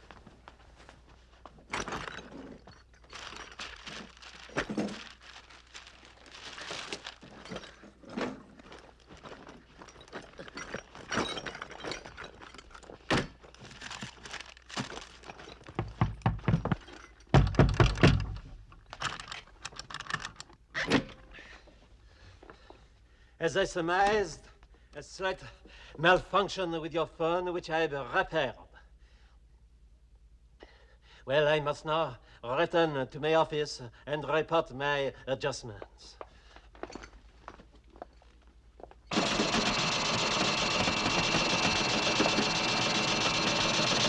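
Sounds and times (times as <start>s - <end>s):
tools clattering and knocking: 1.5s - 5.2s, 6.7s - 21.2s, 36.7s - 44.0s.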